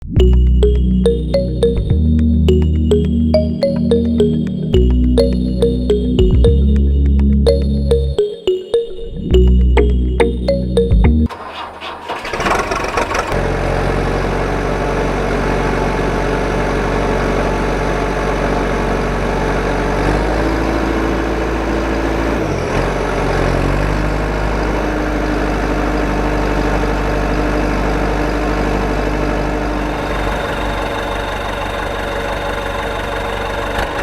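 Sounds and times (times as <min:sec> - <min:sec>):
small engine starting and idling: 0:11.3 - 0:34.0.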